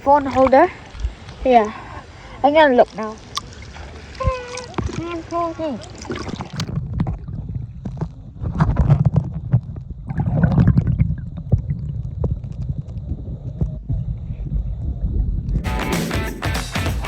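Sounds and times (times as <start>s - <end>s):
muffled underwater rumbling: 0.0s - 15.7s
music: 15.6s - 17.0s.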